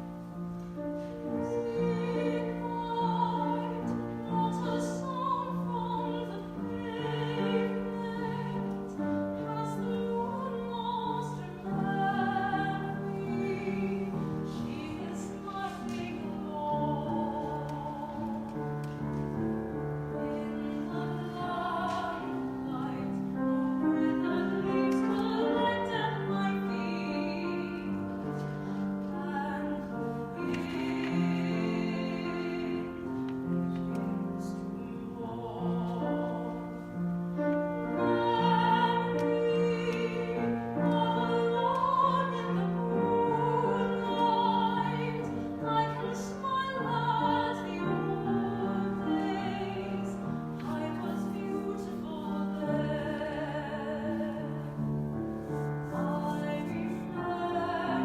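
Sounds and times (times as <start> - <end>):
piano accompaniment: 0.0 - 58.0
operatic singing with vibrato: 37.9 - 54.7.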